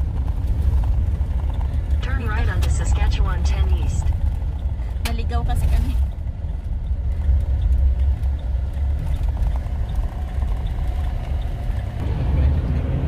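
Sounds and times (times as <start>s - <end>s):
car road and engine noise: 0.0s - 13.0s.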